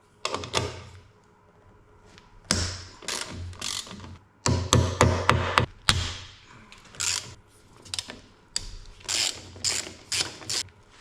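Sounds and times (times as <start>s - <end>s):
ratchet wrench clicking: 7.0s - 7.4s, 9.1s - 10.6s.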